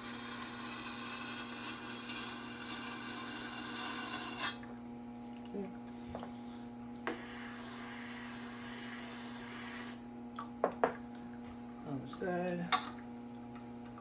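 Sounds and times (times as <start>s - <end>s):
sharpening stone scraping knife: 0.0s - 4.6s
steady low hum: 0.0s - 14.0s.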